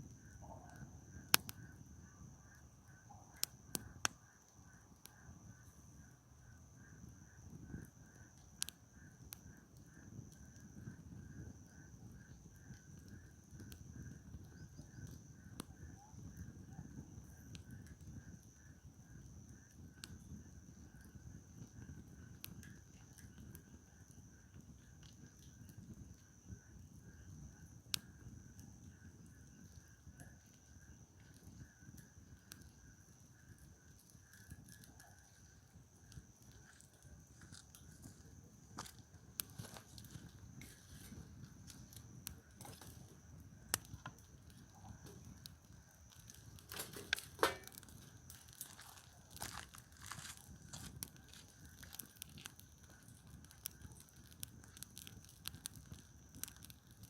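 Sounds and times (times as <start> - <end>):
campfire crackling and popping: 0.0 - 57.0
loud wood snap: 46.7 - 47.9.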